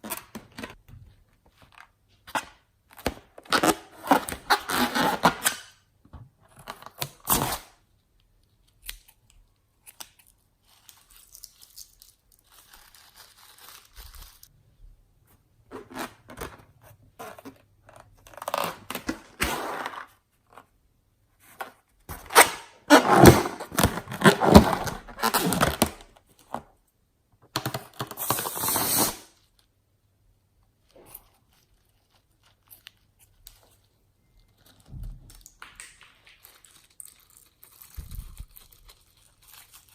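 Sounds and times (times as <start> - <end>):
rustling and tearing: 6.6 - 14.6, 30.8 - 39.9.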